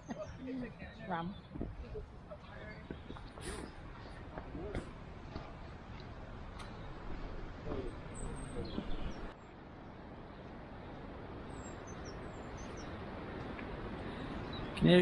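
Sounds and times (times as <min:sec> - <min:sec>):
small birds chirping faintly: 0:00.0 - 0:15.0.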